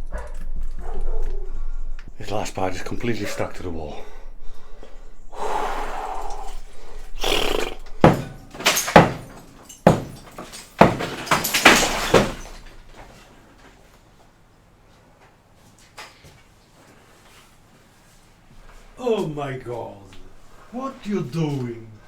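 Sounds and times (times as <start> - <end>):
wood knocking and cracking: 8.0 - 13.1.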